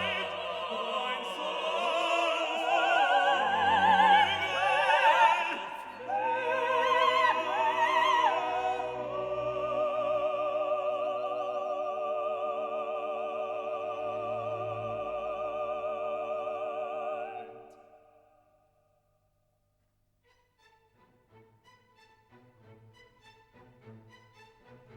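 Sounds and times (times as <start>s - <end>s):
orchestral strings: 0.0s - 17.8s, 20.2s - 24.9s
operatic singing with vibrato: 0.0s - 18.4s.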